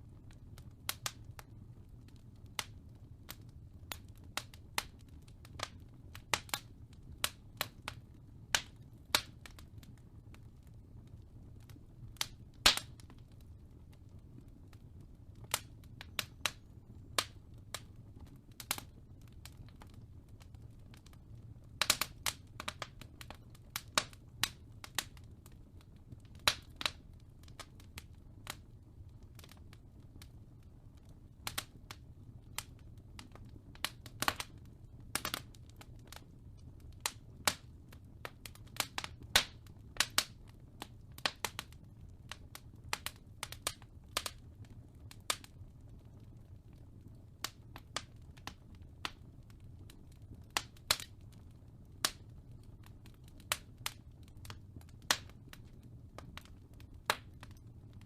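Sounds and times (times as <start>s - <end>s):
fire crackling and popping: 0.0s - 58.0s.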